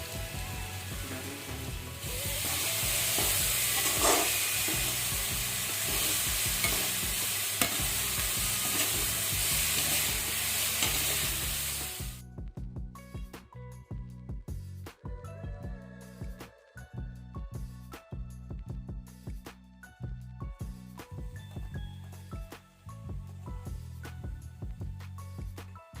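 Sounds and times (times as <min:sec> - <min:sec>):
food sizzling in hot oil: 0:00.0 - 0:12.2
spatula stirring and tapping pan: 0:02.4 - 0:11.4.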